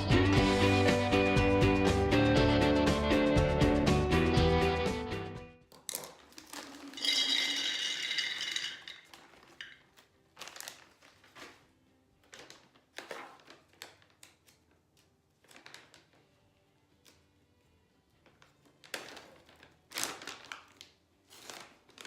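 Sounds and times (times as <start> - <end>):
dry goods rattling in packaging: 5.9 - 14.5, 18.6 - 22.0.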